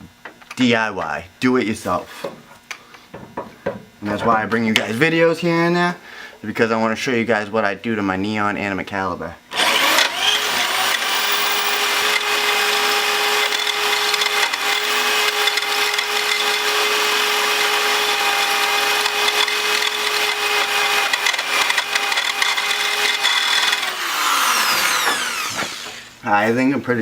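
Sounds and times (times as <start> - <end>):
rotary tool drilling metal: 9.5 - 26.1.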